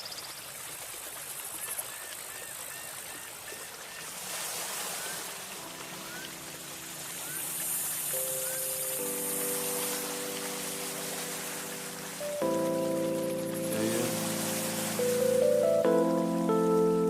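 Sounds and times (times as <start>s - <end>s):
rushing water waves: 0.0s - 17.0s
small chirping calls: 5.0s - 9.0s.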